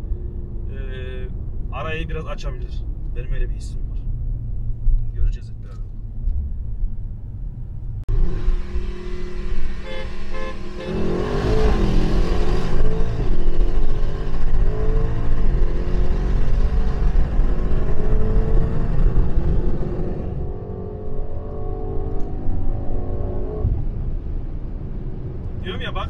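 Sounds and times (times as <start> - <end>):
wind and road noise: 0.0 - 26.0
car engine accelerating hard: 8.1 - 23.9.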